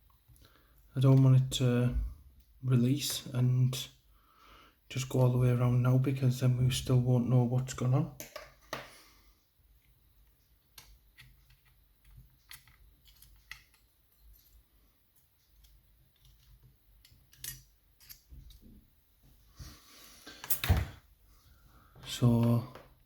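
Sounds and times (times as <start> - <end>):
lockpicking tools clicking and scraping: 10.8 - 14.6, 15.4 - 18.6.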